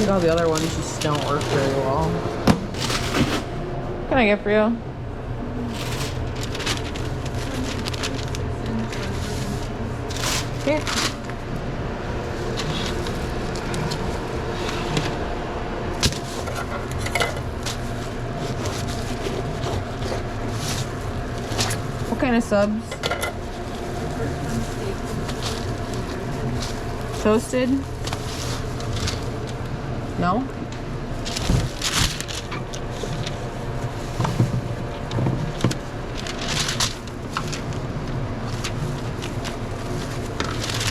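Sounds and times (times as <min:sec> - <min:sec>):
equipment humming: 0:00.0 - 0:40.9
knocks and rustling of sandwich: 0:16.0 - 0:22.2, 0:31.2 - 0:40.9.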